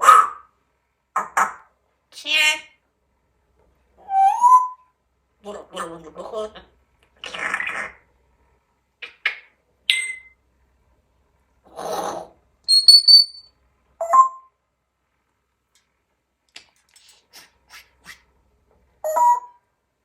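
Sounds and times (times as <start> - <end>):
parrot whistling: 4.0 - 4.8, 12.7 - 14.5, 19.0 - 19.6.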